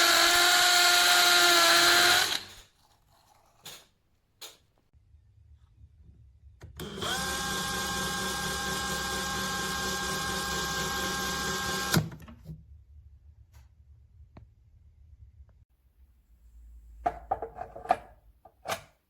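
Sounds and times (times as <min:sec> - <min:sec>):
cordless drill motor spinning: 0:00.0 - 0:02.5, 0:06.8 - 0:12.1.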